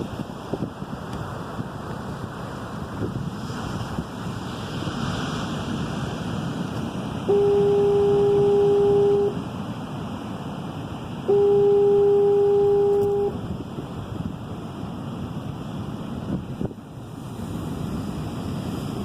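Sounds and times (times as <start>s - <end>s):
breaking surf: 0.0s - 19.0s
foghorn blasts: 7.2s - 9.4s, 11.3s - 13.5s.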